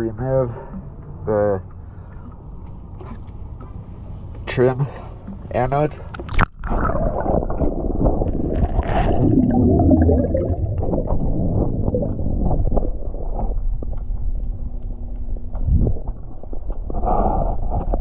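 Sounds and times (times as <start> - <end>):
low hum: 0.0 - 18.0
underwater bubbles gurgling: 5.2 - 14.2.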